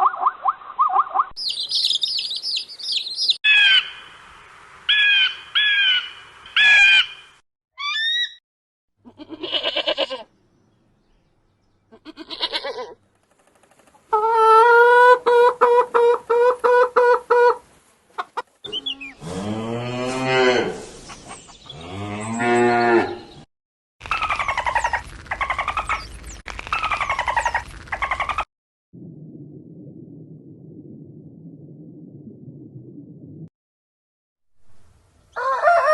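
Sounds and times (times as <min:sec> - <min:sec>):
chicken clucking: 0:14.1 - 0:19.2
cow mooing: 0:21.8 - 0:23.3.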